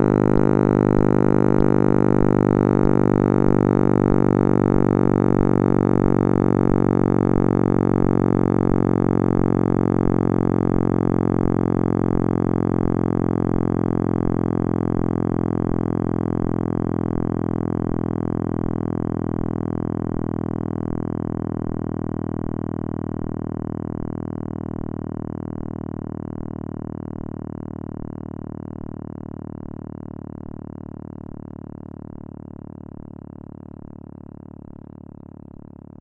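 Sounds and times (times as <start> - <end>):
synthesized drone: 0.0 - 22.5.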